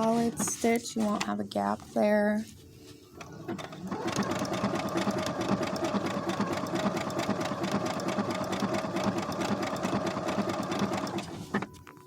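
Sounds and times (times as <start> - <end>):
sewing machine stitching: 3.2 - 11.7.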